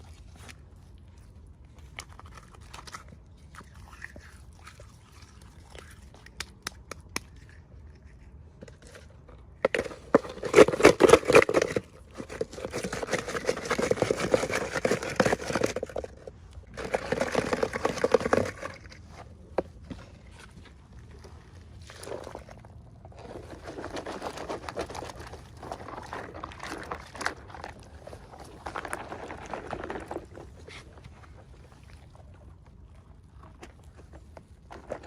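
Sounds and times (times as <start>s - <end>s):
packaging crinkling and rustling: 8.8s - 19.2s.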